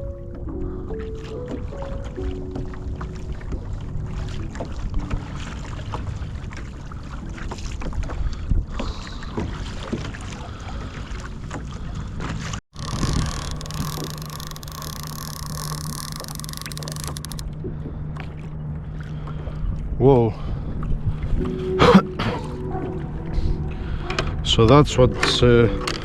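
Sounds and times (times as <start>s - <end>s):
water sloshing against kayak: 0.2s - 24.4s
wind on microphone: 12.8s - 17.4s.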